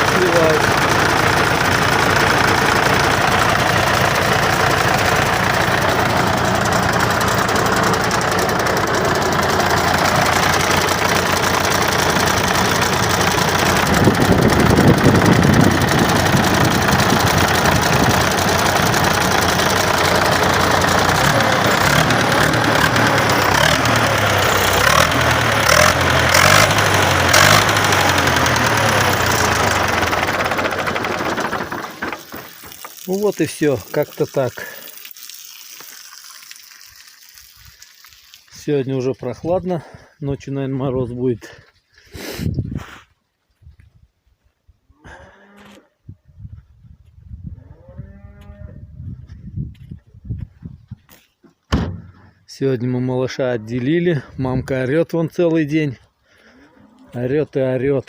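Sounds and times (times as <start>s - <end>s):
engine knocking: 0.0s - 33.0s.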